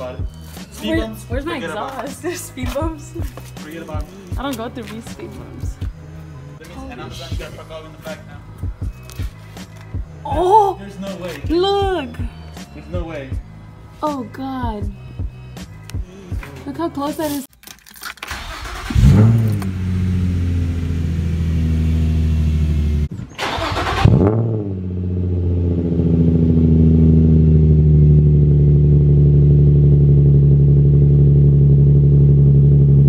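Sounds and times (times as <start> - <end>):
car engine revving and idling: 18.6 - 33.0.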